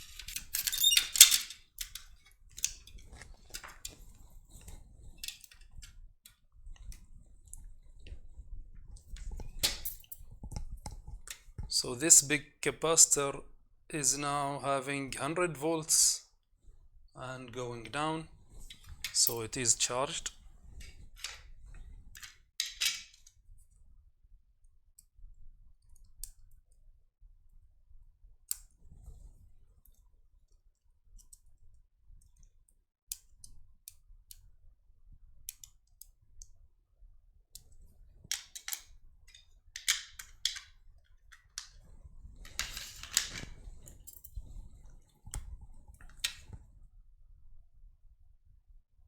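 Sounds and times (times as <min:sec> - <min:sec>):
light clicks and taps of handling: 0:00.1 - 0:11.7, 0:29.8 - 0:31.6, 0:35.4 - 0:36.6, 0:37.5 - 0:46.7.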